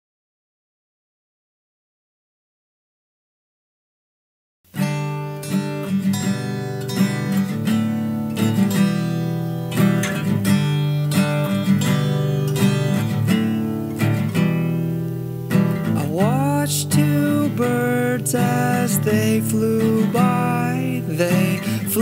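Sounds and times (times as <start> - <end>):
acoustic guitar strumming chords: 4.7 - 22.0.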